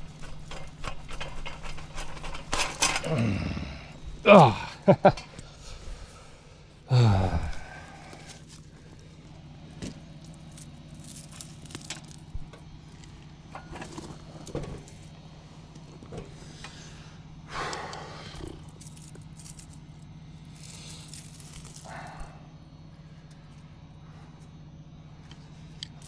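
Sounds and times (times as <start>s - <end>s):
steady low hum: 0.0s - 26.0s
rustling and snapping plants: 7.2s - 15.1s, 20.5s - 22.3s.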